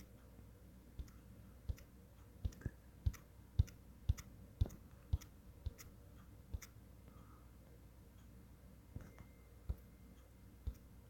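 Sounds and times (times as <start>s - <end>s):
computer mouse clicking: 1.0s - 6.8s, 10.6s - 10.9s.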